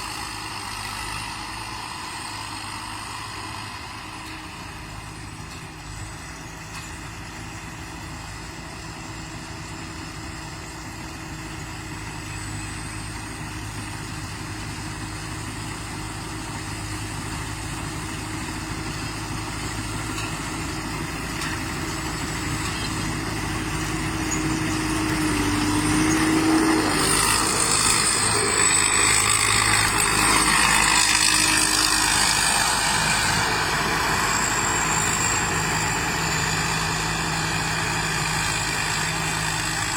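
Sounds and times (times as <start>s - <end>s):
combine harvester engine hum: 0.0s - 39.9s
loud rushing whirring noise: 17.8s - 39.9s.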